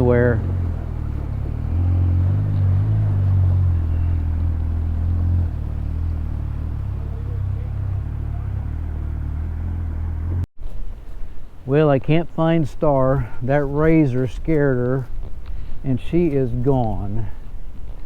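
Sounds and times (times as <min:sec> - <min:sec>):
vehicle engine droning: 0:00.0 - 0:10.5.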